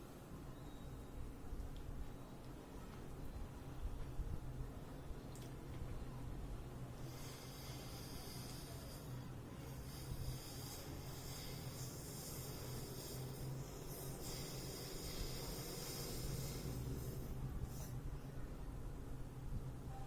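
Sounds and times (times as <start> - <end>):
low steady hum: 0.0 - 20.0
person breathing deeply: 7.0 - 17.9.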